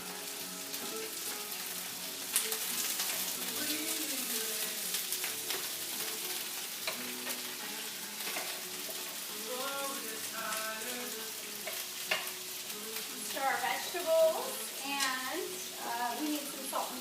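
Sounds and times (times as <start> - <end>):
chicken sizzling in a pan: 0.0 - 17.0.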